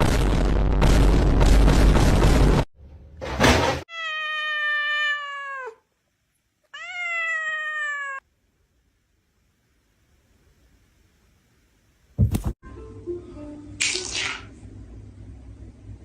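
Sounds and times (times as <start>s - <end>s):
thump: 3.2s - 3.8s, 12.2s - 12.5s
cat meowing: 3.9s - 5.9s, 6.7s - 8.2s.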